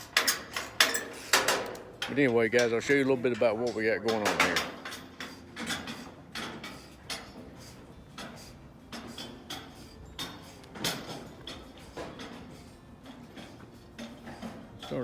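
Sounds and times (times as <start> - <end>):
metal knocks and clanks: 0.0 - 15.0.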